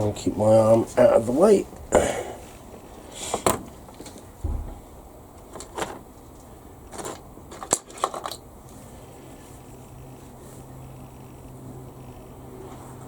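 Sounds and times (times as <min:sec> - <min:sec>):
soft thud: 0:04.4 - 0:04.9.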